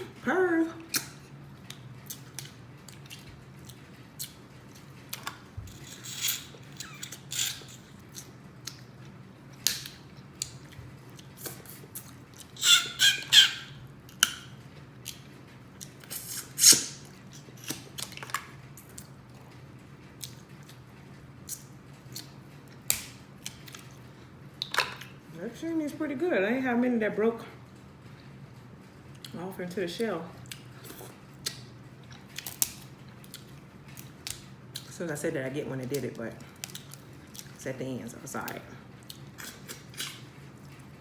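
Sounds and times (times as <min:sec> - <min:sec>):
wet sucking and smacking eating: 0:15.8 - 0:19.1.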